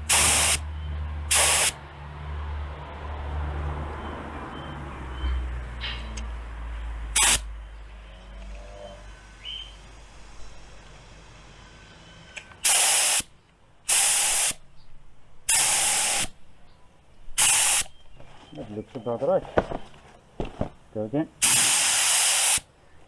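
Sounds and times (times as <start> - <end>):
paint spray gun hissing: 0.0 - 0.6, 1.3 - 1.8, 7.2 - 7.4, 12.6 - 13.3, 13.9 - 14.6, 15.5 - 16.3, 17.4 - 18.0, 21.4 - 22.7.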